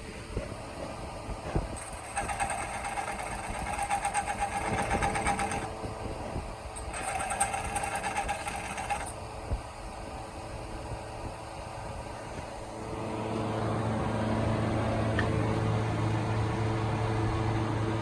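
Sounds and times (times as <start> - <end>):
small motor buzzing: 1.6 - 9.3.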